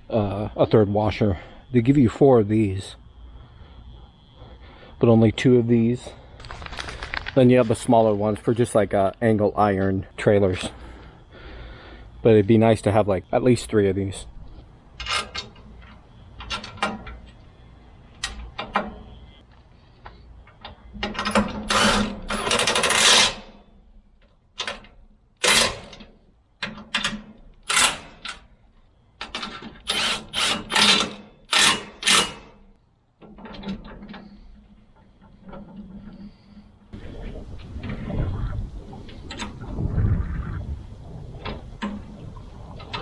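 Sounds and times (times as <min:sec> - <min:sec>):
metal parts and tools clattering: 0:15.0 - 0:17.3, 0:21.0 - 0:23.5, 0:24.6 - 0:28.5, 0:29.2 - 0:36.6.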